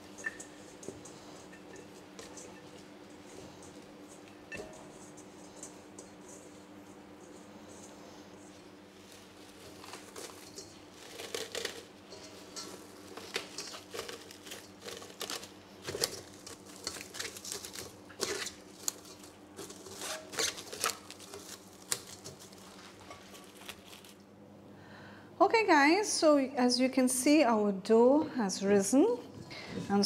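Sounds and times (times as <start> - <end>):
plastic wrap crinkling: 8.5 - 24.2.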